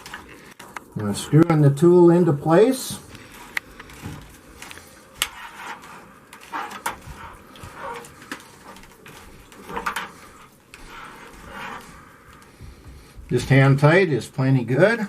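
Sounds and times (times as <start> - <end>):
scraping handling sounds: 2.8 - 14.5.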